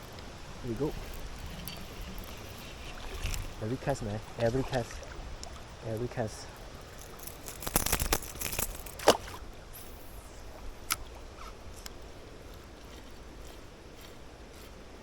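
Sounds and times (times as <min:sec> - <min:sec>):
river water rushing: 0:00.0 - 0:07.2
fishing tackle clicking and rattling: 0:00.8 - 0:03.6, 0:06.0 - 0:09.3.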